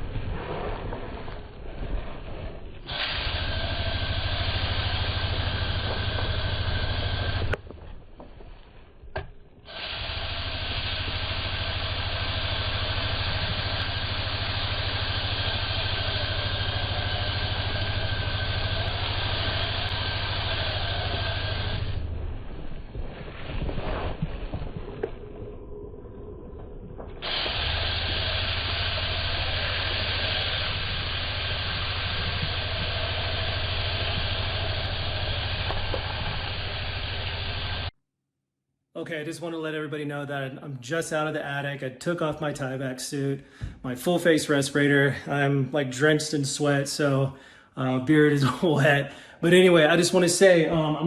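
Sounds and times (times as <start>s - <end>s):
low motor hum: 0.0s - 38.0s
sprayer hissing: 2.9s - 7.6s, 9.7s - 22.1s, 27.2s - 37.9s.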